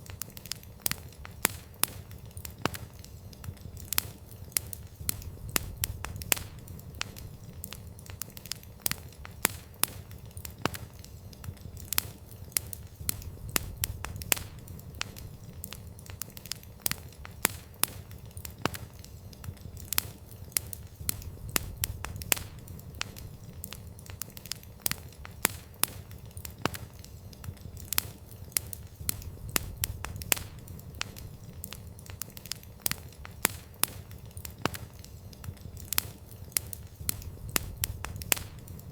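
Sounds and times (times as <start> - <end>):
low rumble of flames: 0.0 - 38.9
wood fire crackling: 0.0 - 38.9.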